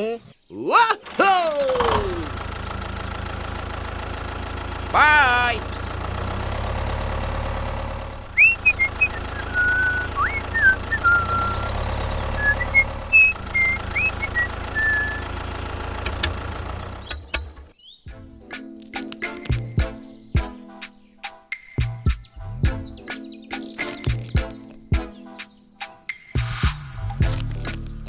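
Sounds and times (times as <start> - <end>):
small engine idling: 1.0 - 17.8, 27.1 - 28.0
sliding whistled notes: 8.3 - 16.0, 22.4 - 28.0
clicks: 18.8 - 19.8, 23.6 - 24.8, 27.1 - 28.0.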